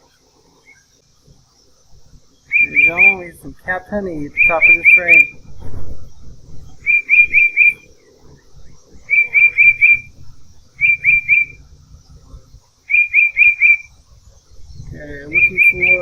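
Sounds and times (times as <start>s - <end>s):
bird singing whistled notes: 1.5s - 16.0s.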